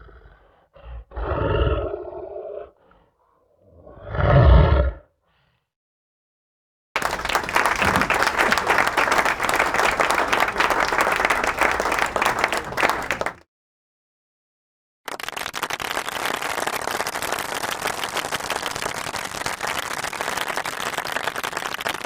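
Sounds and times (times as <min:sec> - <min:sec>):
animal roar: 0:00.0 - 0:03.1, 0:03.7 - 0:05.1
crowd applauding: 0:07.0 - 0:13.4.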